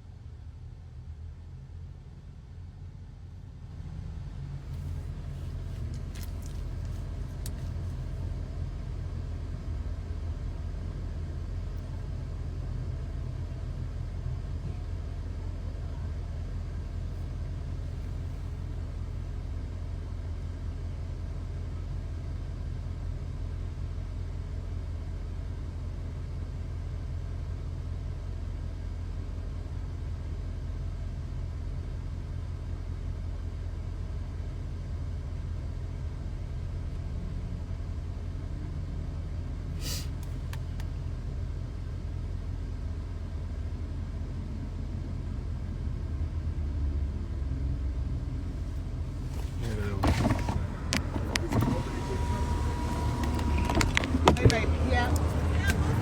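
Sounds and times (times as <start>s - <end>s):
car cabin rumble: 4.6s - 9.1s, 48.4s - 56.0s.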